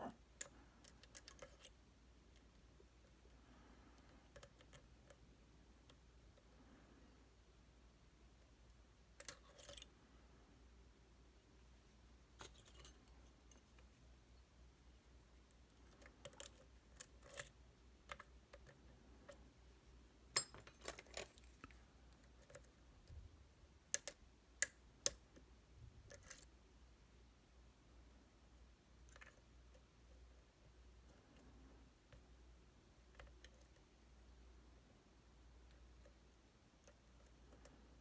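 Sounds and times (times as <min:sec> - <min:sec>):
lock pick clicking metallically: 0:20.4 - 0:21.2.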